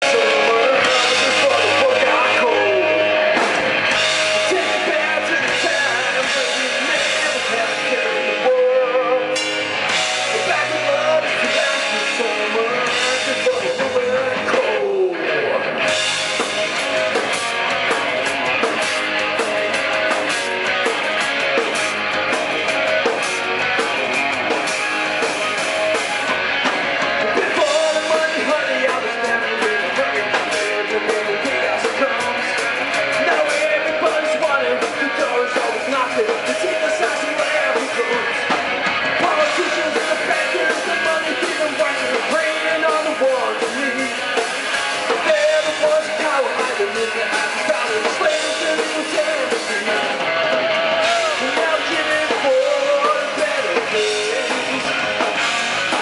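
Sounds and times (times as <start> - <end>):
person singing: 0.0 - 9.5, 10.2 - 15.8, 27.0 - 38.6, 39.2 - 55.3
electric guitar: 0.0 - 56.0
rock band playing live: 0.0 - 56.0.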